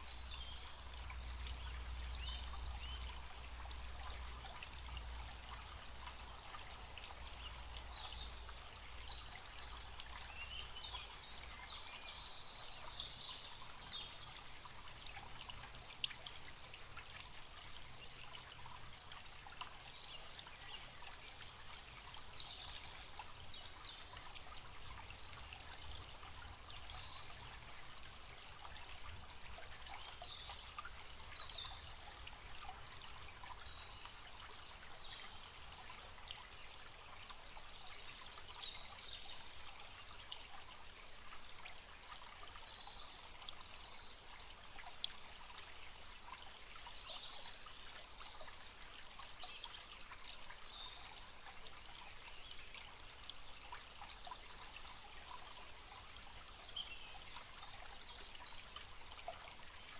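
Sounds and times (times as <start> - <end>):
stream trickling and splashing: 0.0 - 59.9.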